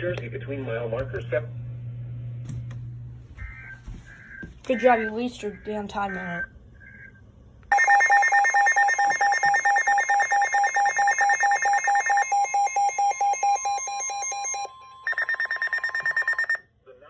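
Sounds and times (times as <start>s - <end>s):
rapid alarm beeping: 3.4s - 16.6s.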